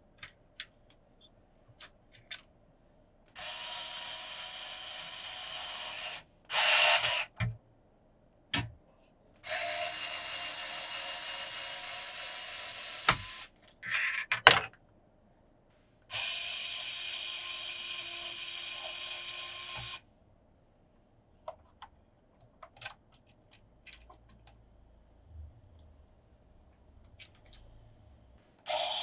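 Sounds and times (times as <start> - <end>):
handheld power tool running: 3.4 - 7.3, 9.4 - 13.5, 16.1 - 20.0, 28.7 - 29.0.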